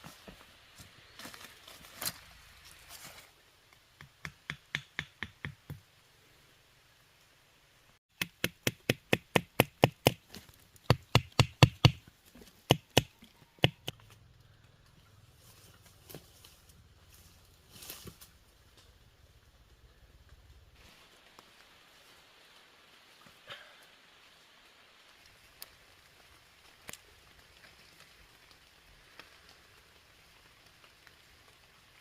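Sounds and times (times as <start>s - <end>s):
chopping strikes on wood: 4.0s - 5.8s, 8.2s - 10.3s, 10.9s - 12.0s, 12.6s - 14.0s.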